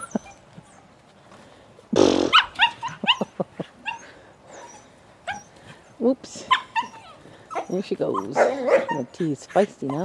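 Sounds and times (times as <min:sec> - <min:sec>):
puppy yipping: 0:02.3 - 0:05.5, 0:06.5 - 0:10.0.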